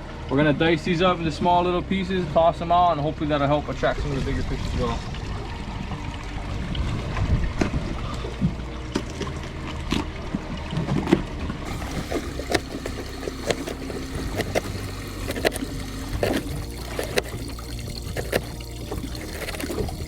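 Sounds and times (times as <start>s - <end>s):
boat hum: 0.0s - 20.0s
water sounds: 0.0s - 20.0s.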